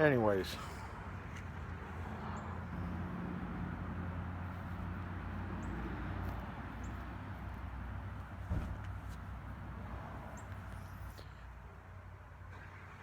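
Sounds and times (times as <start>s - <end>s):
short low bump: 8.4s - 8.9s.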